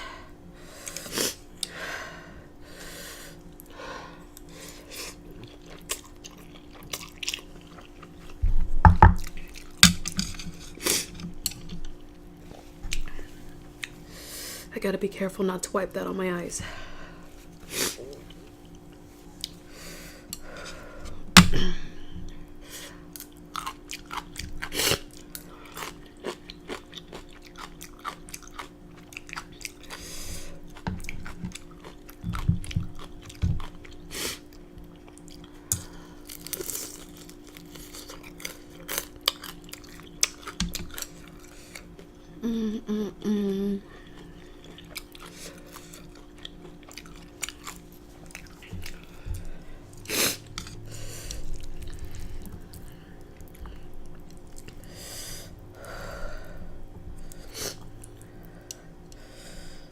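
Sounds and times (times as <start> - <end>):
wet chewing and crunching: 5.2 - 8.4, 9.1 - 14.0, 23.1 - 42.2, 44.0 - 54.9.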